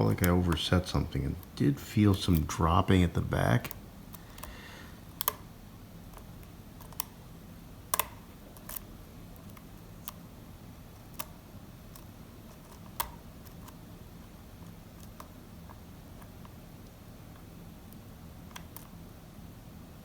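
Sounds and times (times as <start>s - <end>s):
low steady hum: 0.0s - 20.0s
lock pick clicking: 7.9s - 8.8s.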